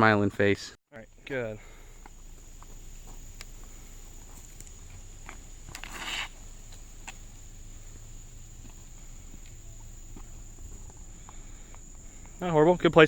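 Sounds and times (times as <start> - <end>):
insects trilling: 1.0 - 13.0
brief rustling: 4.3 - 7.2.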